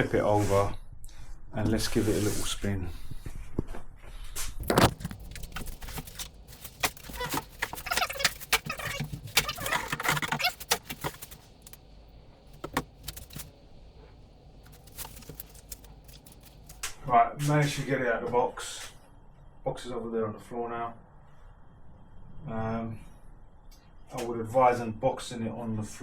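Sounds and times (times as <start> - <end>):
cardboard packaging rustling and scraping: 4.5 - 16.8.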